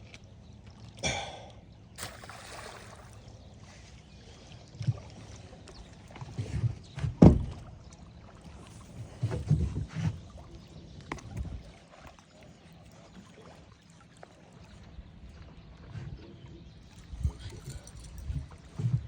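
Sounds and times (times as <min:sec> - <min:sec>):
knocks and thumps on boat hull: 0:06.2 - 0:07.8, 0:09.1 - 0:10.4, 0:18.7 - 0:19.0.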